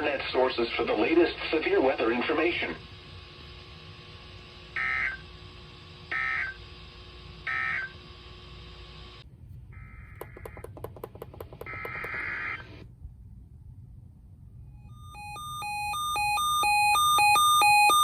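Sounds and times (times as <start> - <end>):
fast train of clicks: 10.2 - 12.3.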